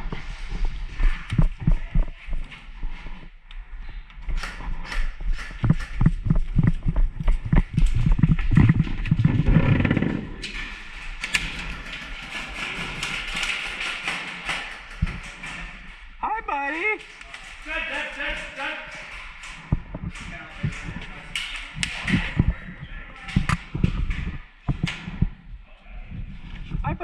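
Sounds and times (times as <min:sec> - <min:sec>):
thumps and knocks: 0:04.2 - 0:10.6, 0:11.3 - 0:15.9, 0:18.9 - 0:27.0.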